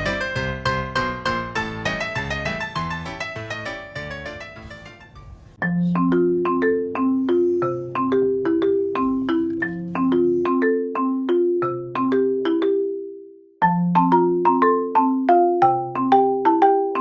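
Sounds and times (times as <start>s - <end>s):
background music: 0.0s - 10.4s
bright marimba-like melody: 0.0s - 17.0s.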